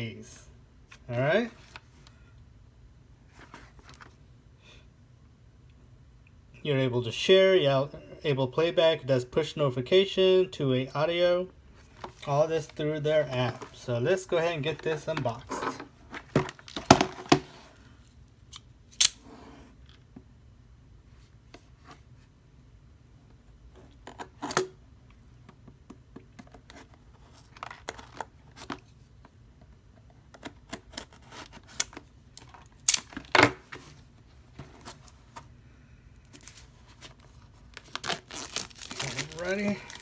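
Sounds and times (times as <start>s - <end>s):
packaging snaps and rustles: 30.4s - 33.5s, 36.3s - 40.0s
cardboard box being opened: 36.4s - 40.0s.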